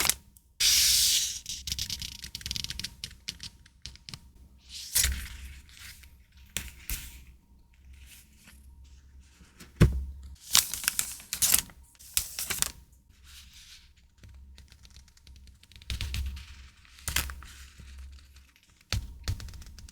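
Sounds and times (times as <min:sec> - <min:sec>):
packaging rustling and crinkling: 0:09.4 - 0:12.8
thump on desk: 0:09.6 - 0:10.2.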